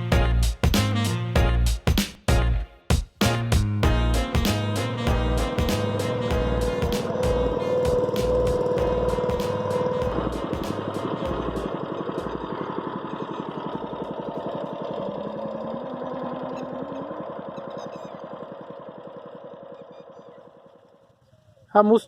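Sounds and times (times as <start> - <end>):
small boat engine putter: 6.2 - 21.3.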